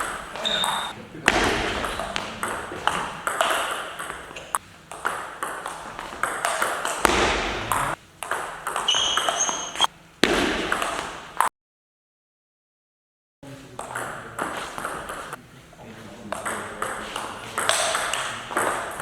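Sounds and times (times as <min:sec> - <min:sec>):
high-pitched squeak: 0:00.4 - 0:00.9, 0:08.9 - 0:09.9
table tennis ball clicks: 0:01.8 - 0:09.9, 0:16.3 - 0:19.0.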